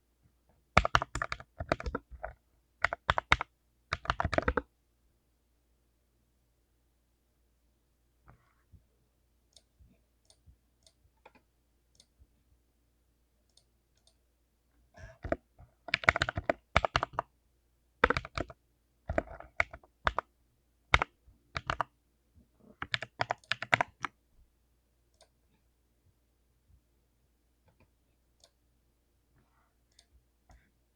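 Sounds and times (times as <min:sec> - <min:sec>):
typing on mechanical keyboard: 0:00.8 - 0:04.6, 0:15.2 - 0:17.3, 0:18.0 - 0:20.3, 0:20.9 - 0:21.9, 0:22.8 - 0:24.1.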